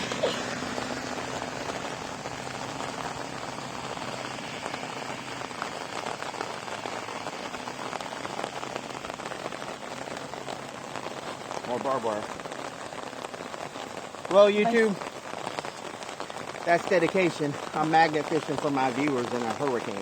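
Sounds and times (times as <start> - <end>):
heavy rain falling: 0.0 - 20.0.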